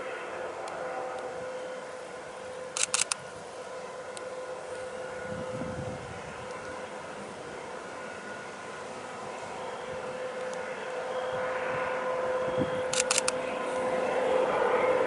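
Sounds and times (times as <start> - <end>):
distant diesel locomotive drone: 0.0 - 15.0
sharp loud clicks: 12.9 - 13.4.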